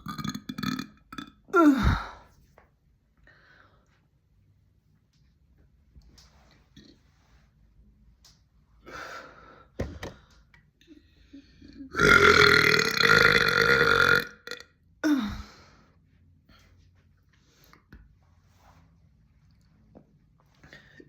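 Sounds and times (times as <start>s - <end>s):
person burping: 0.0s - 2.2s, 11.6s - 15.5s.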